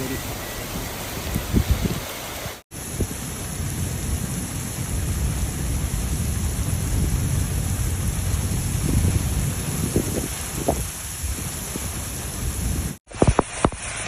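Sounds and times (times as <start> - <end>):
heavy rain falling: 0.0 - 14.0
low rumble: 2.8 - 13.0.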